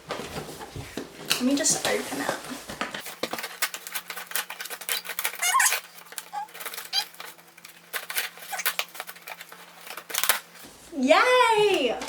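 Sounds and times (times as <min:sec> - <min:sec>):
packaging crackling and rustling: 0:00.1 - 0:10.7
short squeaks: 0:04.9 - 0:07.3, 0:08.4 - 0:08.8.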